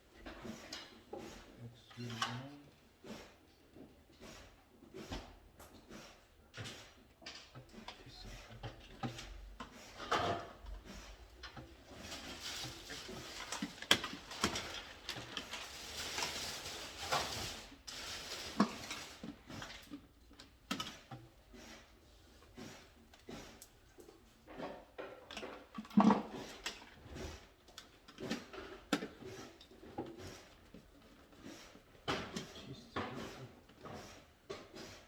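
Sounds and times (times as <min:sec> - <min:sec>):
rustling and scraping: 0:09.7 - 0:35.0.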